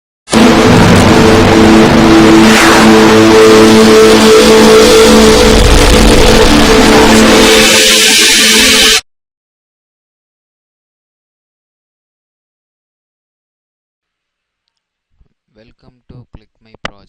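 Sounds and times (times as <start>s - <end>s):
held low tones: 0.3s - 7.8s
rush of noise: 0.3s - 9.0s
whoosh: 0.3s - 9.0s.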